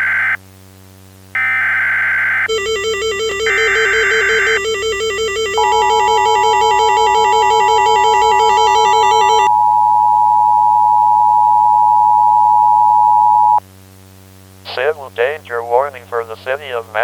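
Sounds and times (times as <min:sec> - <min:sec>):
music playing: 0:02.5 - 0:09.5
two-tone alert signal: 0:02.5 - 0:09.9.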